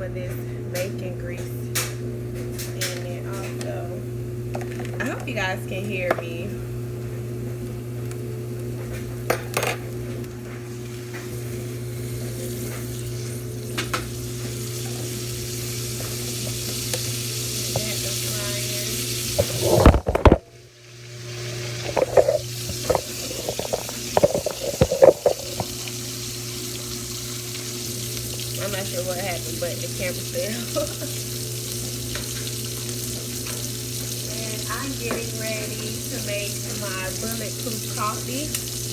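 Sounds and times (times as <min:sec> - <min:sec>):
ham sizzling in a pan: 0:07.1 - 0:38.9.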